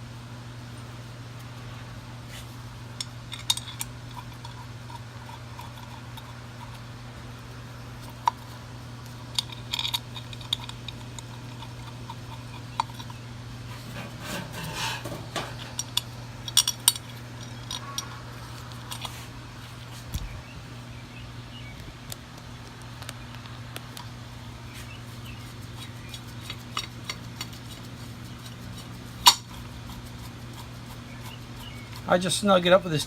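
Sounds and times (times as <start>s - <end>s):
steady low hum: 0.0s - 33.0s
metal tools clinking: 3.0s - 4.6s, 13.9s - 19.2s.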